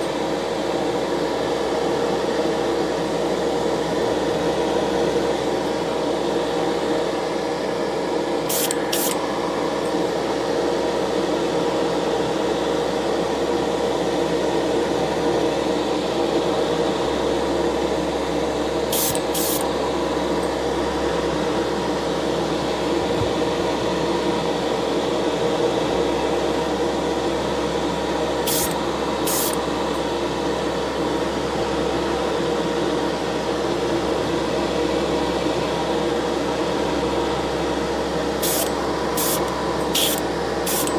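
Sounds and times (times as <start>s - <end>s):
spray paint hissing: 8.5s - 9.2s, 18.9s - 19.6s, 28.5s - 29.6s, 38.4s - 40.9s
small electric motor humming: 28.5s - 29.6s, 38.4s - 40.9s.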